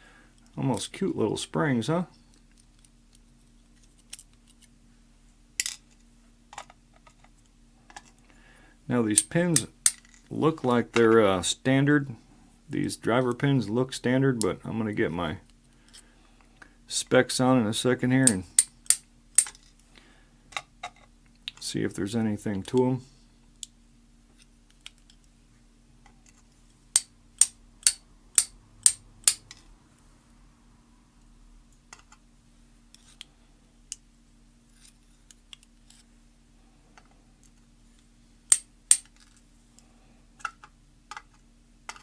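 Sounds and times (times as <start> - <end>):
low steady hum: 0.0 - 42.0
metal padlock parts clicking: 27.0 - 29.4, 38.5 - 39.1.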